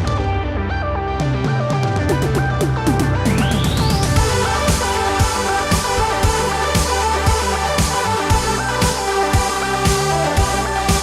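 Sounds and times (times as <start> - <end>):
low kick drum beat: 2.1 - 11.0
sustained synth tones: 2.2 - 11.0.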